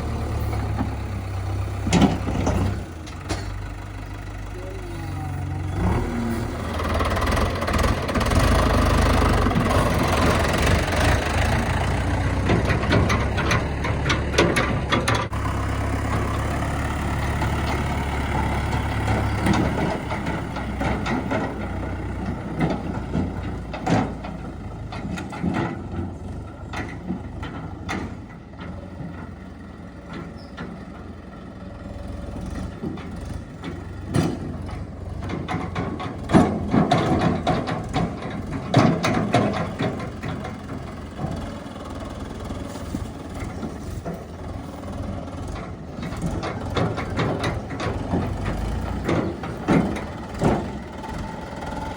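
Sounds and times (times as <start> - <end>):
diesel engine working under load: 0.0 - 51.9
sharp metal knocks and clanks: 1.7 - 3.7, 32.8 - 41.6, 45.3 - 51.2.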